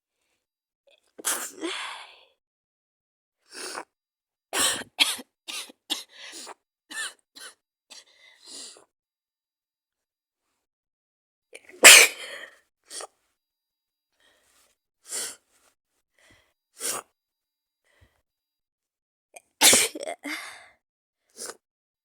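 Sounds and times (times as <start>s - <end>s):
woman sneezing: 11.8s - 12.4s, 19.6s - 20.4s
quiet breath sounds: 14.1s - 16.9s.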